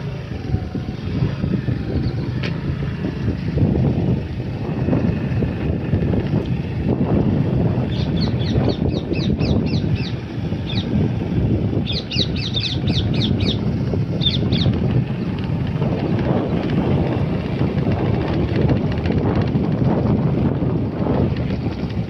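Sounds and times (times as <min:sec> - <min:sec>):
steady low rumble: 0:00.0 - 0:22.0
bird chirping: 0:07.9 - 0:10.9, 0:11.8 - 0:13.6, 0:14.2 - 0:15.3.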